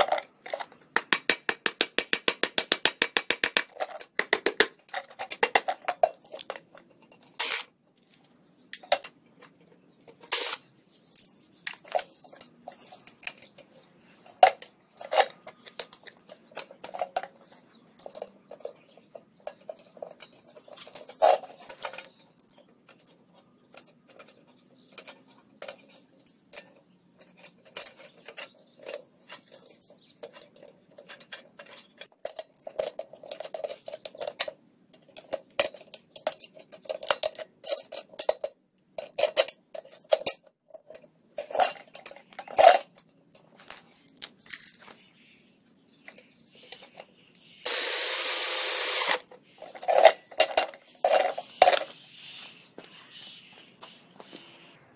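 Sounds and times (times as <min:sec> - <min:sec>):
hard objects clicking and clinking: 0:00.0 - 0:10.6, 0:11.2 - 0:45.0.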